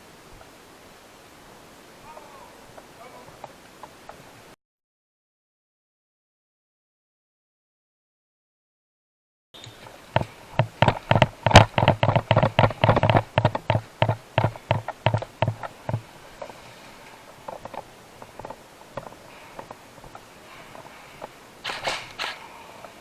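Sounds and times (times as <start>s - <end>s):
faint taps: 9.8s - 21.4s
sharp knocks: 10.1s - 16.1s.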